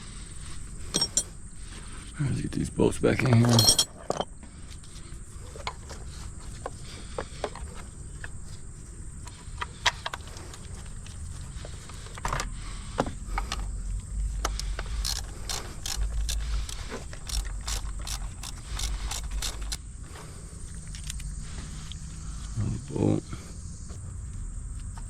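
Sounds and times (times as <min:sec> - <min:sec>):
tools and bolts clinking: 0:00.9 - 0:01.4, 0:03.2 - 0:04.4, 0:14.5 - 0:19.8
ratchet wrench clicking: 0:14.5 - 0:19.9, 0:20.9 - 0:21.3.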